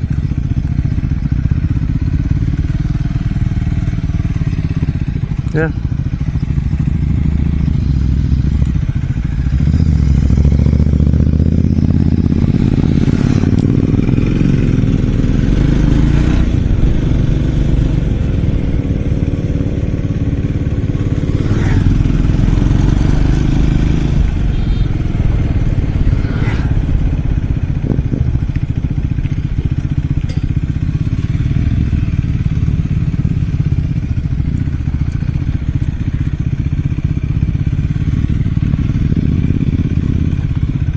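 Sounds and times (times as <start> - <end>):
motorcycle engine accelerating: 0.0 - 40.9
knocks and clatter over rough ground: 22.6 - 39.6.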